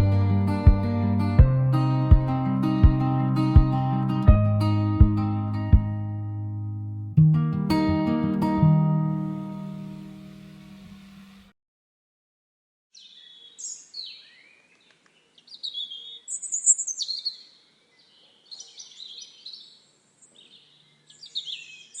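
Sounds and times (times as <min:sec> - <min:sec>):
acoustic guitar music: 0:00.0 - 0:11.4
bird song with chirps and trills: 0:13.0 - 0:22.0.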